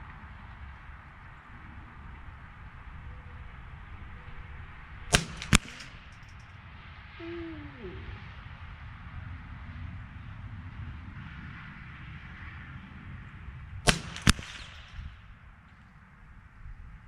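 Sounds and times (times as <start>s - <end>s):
wind rumble on microphone: 0.0s - 17.0s
rifle shots: 5.1s - 6.3s, 13.9s - 15.0s.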